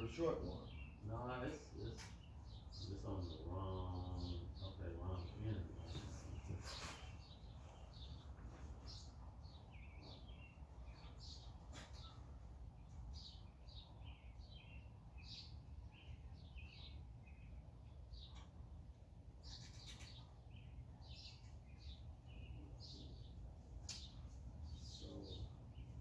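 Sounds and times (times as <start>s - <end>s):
faint birds chirping: 0.0s - 26.0s.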